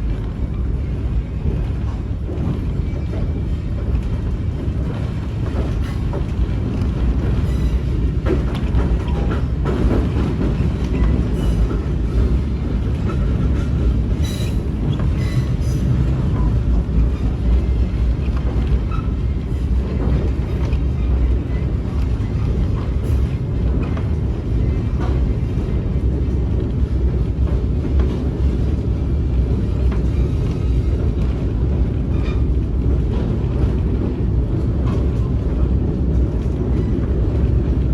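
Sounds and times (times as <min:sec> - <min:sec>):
train rumble: 0:00.0 - 0:37.9.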